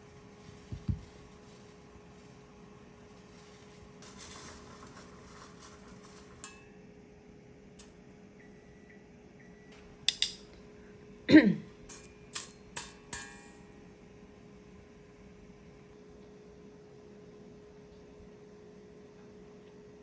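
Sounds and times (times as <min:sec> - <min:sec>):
steady low hum: 0:00.0 - 0:20.0
kitchenware clicks and clinks: 0:10.1 - 0:10.5.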